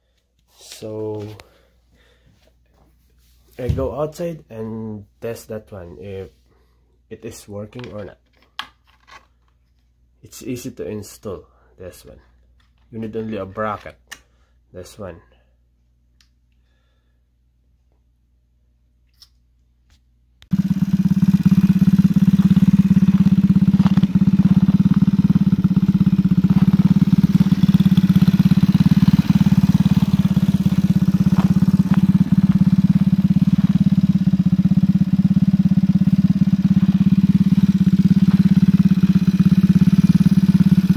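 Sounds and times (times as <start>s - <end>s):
loud motorized bicycle engine: 20.5s - 40.9s.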